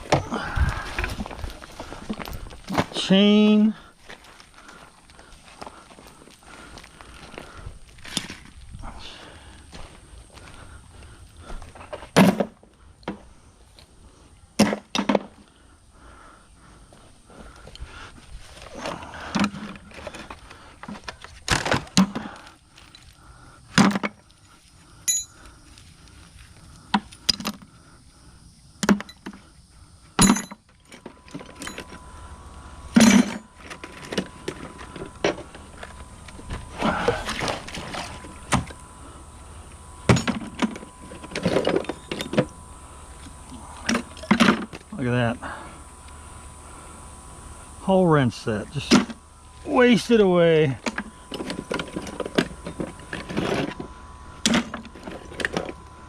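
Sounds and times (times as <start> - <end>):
metal tools clanking into bucket: 33.0 - 35.4.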